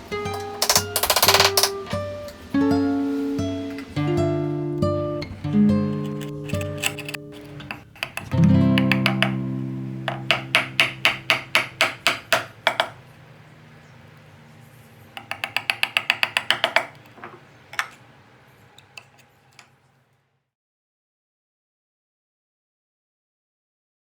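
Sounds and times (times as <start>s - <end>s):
acoustic guitar strumming: 0.0s - 12.6s.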